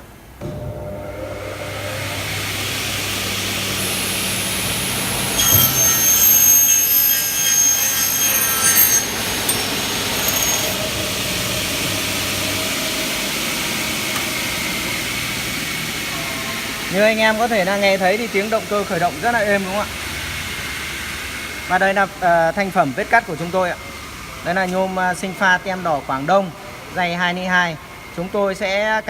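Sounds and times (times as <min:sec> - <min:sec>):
saw running with steady hum: 0:00.2 - 0:29.0
saw blade cutting aluminium: 0:01.4 - 0:15.9.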